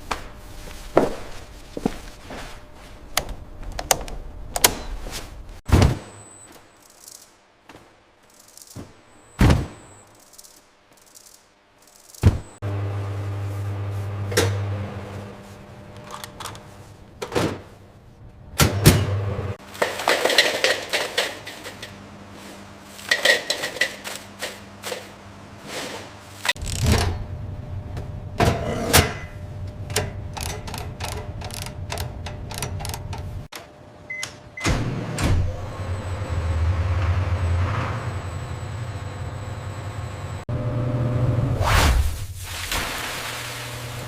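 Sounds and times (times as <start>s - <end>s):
machinery humming: 26.2s - 41.5s
sharp clicks and clattering: 29.9s - 33.3s.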